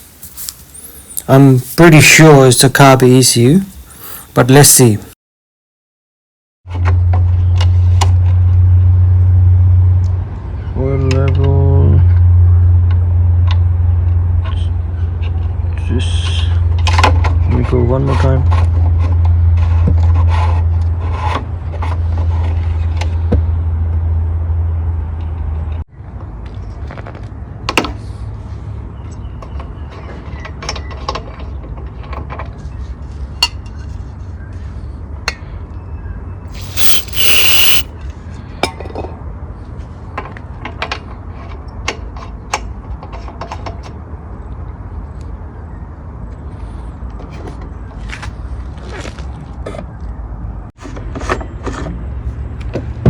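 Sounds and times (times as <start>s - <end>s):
hands working on small engine: 0.0s - 2.2s, 36.5s - 37.9s
loud hiss: 0.0s - 2.2s, 3.6s - 5.1s, 36.5s - 37.9s.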